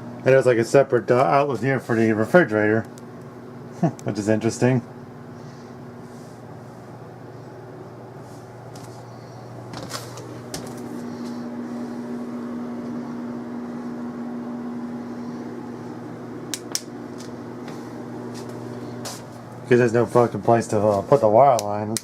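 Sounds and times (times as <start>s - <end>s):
appliance motor humming: 7.2s - 22.0s
appliance switch clicks: 16.5s - 17.3s, 21.5s - 22.0s.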